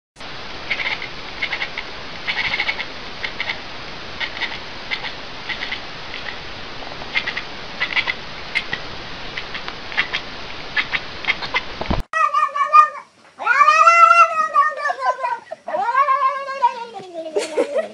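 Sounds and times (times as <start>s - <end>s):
steady hiss: 0.2s - 12.1s
animal chittering high chirps: 0.7s - 3.6s, 4.2s - 6.4s, 7.1s - 11.6s.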